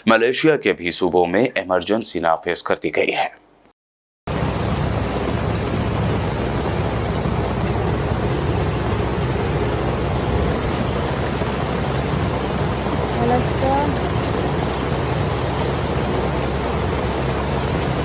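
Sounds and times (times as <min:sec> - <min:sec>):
steady low rushing noise: 0:04.3 - 0:18.0.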